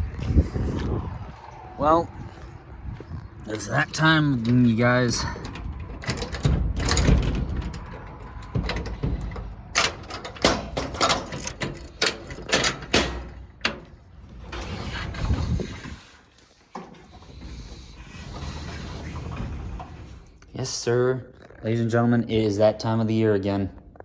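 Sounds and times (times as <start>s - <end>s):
low rumble: 0.0s - 11.9s
sharp knocks and clatter: 5.4s - 14.0s.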